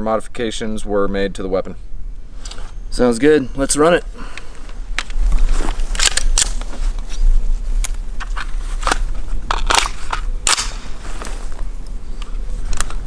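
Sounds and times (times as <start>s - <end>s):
clicks and knocks of handled gear: 4.3s - 7.2s, 7.8s - 13.0s.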